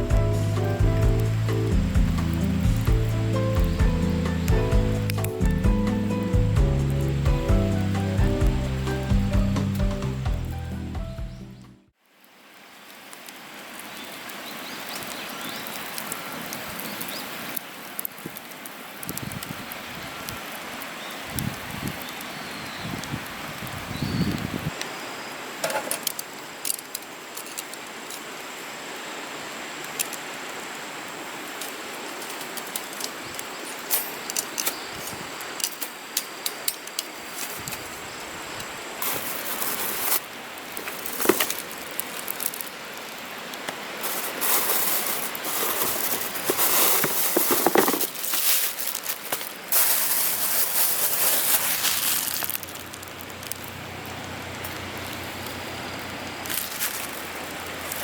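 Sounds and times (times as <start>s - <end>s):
campfire crackling and popping: 0.0s - 10.6s, 12.9s - 22.4s, 25.7s - 28.4s, 35.3s - 58.0s
rustling hissing noise: 0.0s - 10.8s, 14.9s - 58.0s.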